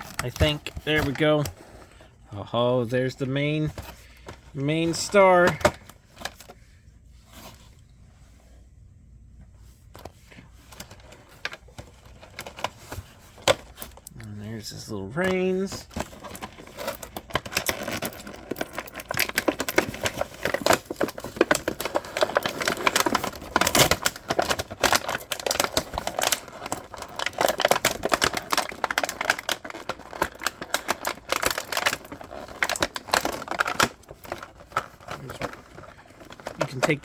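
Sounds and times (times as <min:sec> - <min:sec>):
plastic packaging clicking and crinkling: 0:00.0 - 0:02.0, 0:10.0 - 0:37.0.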